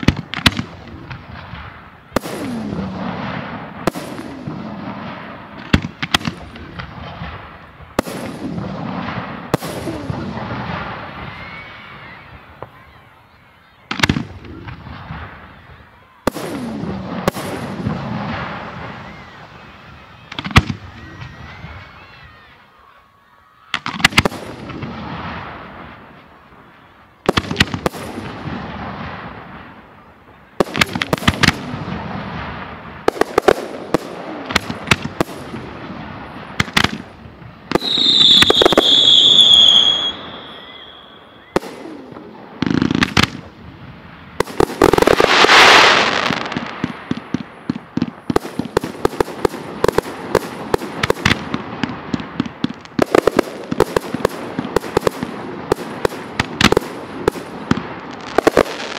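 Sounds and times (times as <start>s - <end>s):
fireworks bangs: 0.0s - 58.9s
fireworks crackling: 0.0s - 58.9s
firework whistle: 10.7s - 13.7s, 37.7s - 42.2s.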